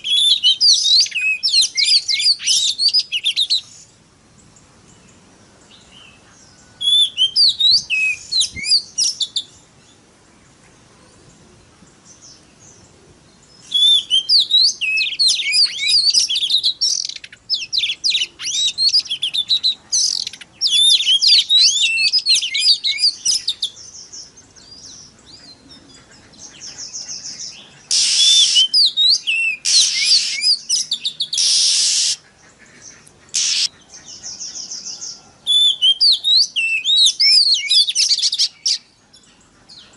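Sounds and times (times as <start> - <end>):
bird singing whistled phrases: 0.0 - 3.8, 6.8 - 9.5, 13.6 - 23.8, 27.9 - 32.2, 33.4 - 33.7, 35.5 - 38.9
harsh rasping bird calls: 0.0 - 9.7, 12.0 - 39.9.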